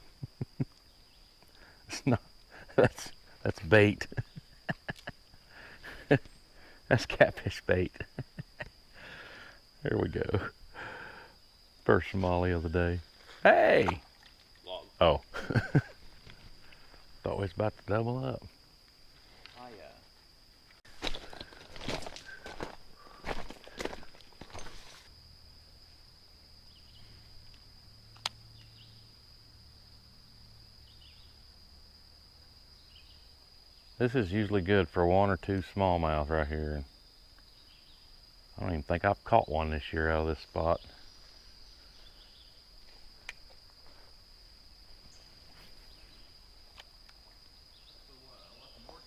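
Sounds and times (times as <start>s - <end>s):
insects calling high-pitched: 0.0s - 49.0s
sharp click: 28.1s - 28.7s.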